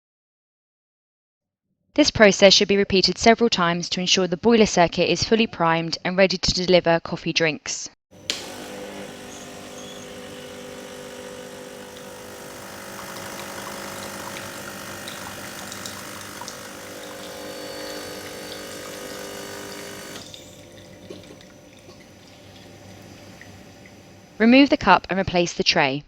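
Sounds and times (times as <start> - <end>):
espresso machine pump running: 8.1 - 24.7
faint water trickle: 20.3 - 24.1.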